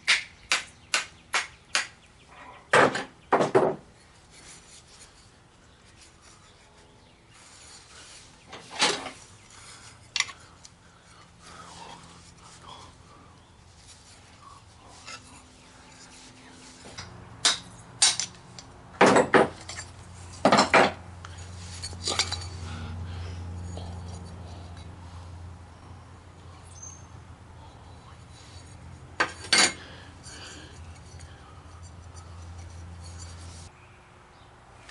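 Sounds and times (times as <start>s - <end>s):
metal parts clanking: 8.5s - 10.4s, 16.8s - 21.0s, 21.6s - 22.7s, 28.5s - 33.7s.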